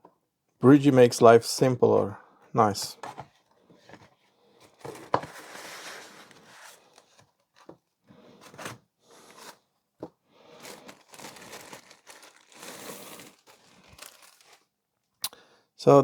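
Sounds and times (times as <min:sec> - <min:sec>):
packaging crinkling and rustling: 0:03.9 - 0:07.7, 0:10.5 - 0:14.7.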